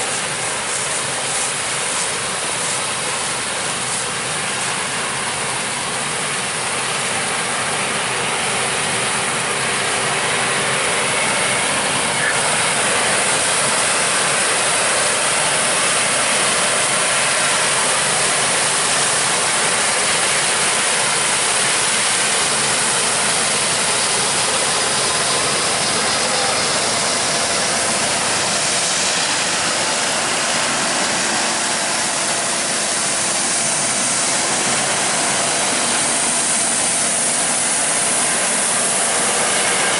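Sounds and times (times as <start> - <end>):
combine harvester engine: 0.0 - 39.9.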